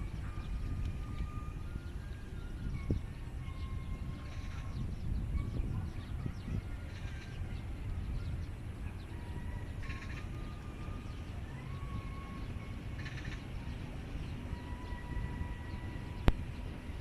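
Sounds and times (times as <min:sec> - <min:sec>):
low rumble: 0:00.0 - 0:17.0
harsh bird calls: 0:08.4 - 0:16.7.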